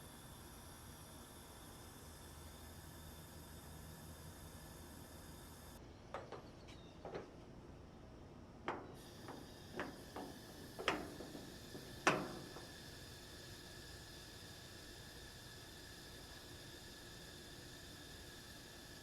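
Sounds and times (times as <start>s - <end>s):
faint hiss: 8.7s - 19.0s.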